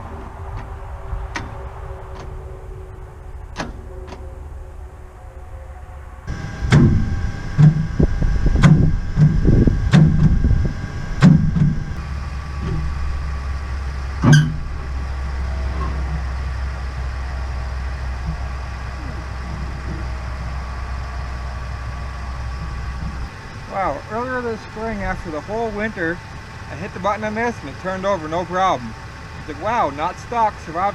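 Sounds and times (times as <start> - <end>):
steady low hum: 0.0 - 30.9
engine cranking clunks: 6.3 - 30.9.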